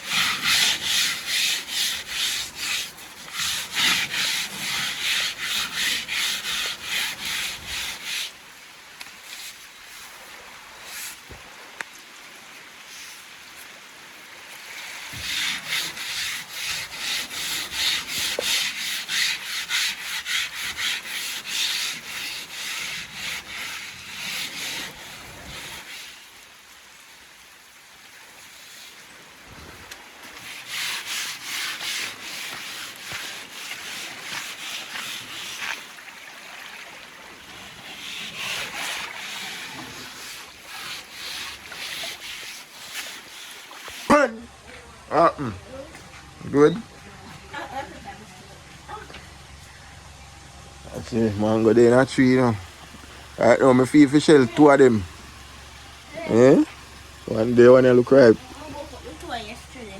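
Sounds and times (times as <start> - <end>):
abrasive scrubbing boat hull: 0.0 - 8.4, 14.7 - 26.4, 28.6 - 45.3.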